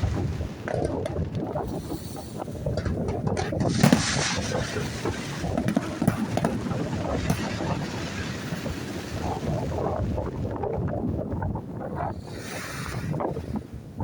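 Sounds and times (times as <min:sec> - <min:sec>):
fireworks bangs: 0:00.0 - 0:09.9
wind buffeting microphone: 0:00.0 - 0:14.0.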